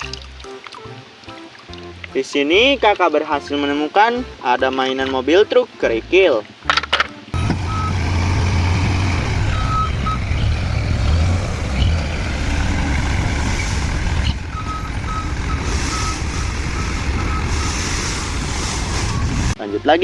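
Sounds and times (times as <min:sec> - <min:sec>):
reversing alarm beeping: 0:07.4 - 0:08.4, 0:09.4 - 0:10.4, 0:14.4 - 0:18.3
truck engine running: 0:07.4 - 0:19.6.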